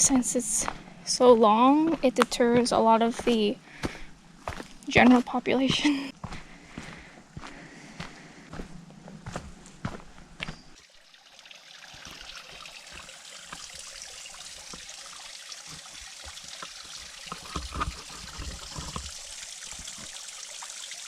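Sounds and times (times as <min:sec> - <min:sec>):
soft low thumps: 0:00.1 - 0:10.6
creek water rushing: 0:10.8 - 0:21.0.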